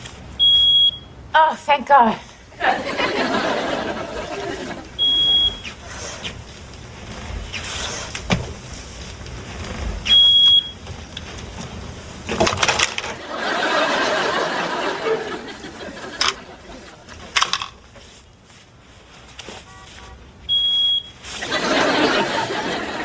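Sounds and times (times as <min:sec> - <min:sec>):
noise: 0:00.0 - 0:23.0
smoke detector beeping: 0:00.4 - 0:01.2, 0:04.9 - 0:05.8, 0:10.0 - 0:10.9, 0:19.7 - 0:21.2.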